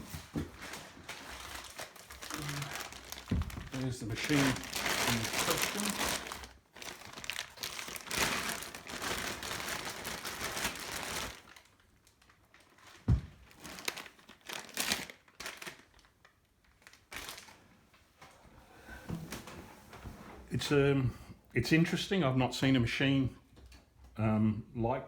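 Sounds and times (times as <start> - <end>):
packaging wrap crumpling: 0.5 - 17.7.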